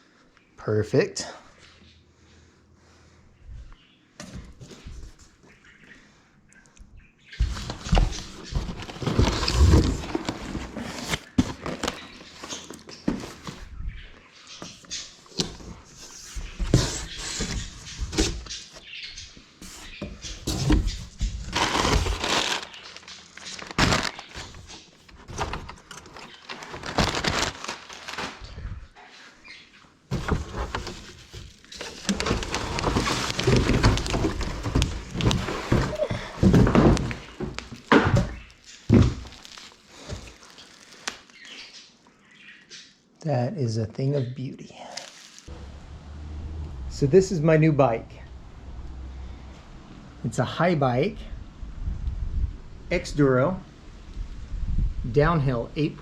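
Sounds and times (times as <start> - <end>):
packing material rustling: 7.4 - 13.7, 19.7 - 28.9, 30.1 - 41.6, 44.8 - 45.5.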